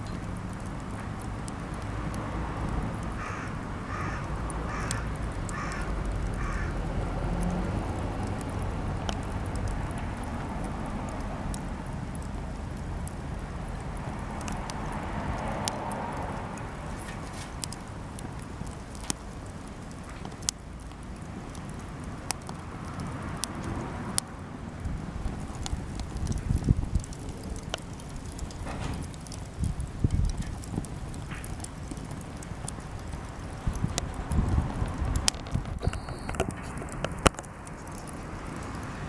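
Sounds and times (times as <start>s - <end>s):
campfire crackling and popping: 0.0s - 39.0s
bird calling: 35.8s - 36.4s.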